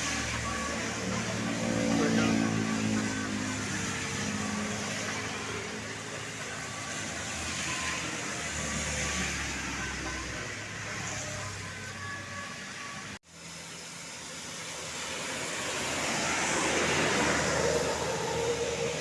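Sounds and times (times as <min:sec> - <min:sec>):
vehicle engine passing: 0:00.0 - 0:07.6, 0:13.3 - 0:19.0
steady traffic hum: 0:00.0 - 0:19.0.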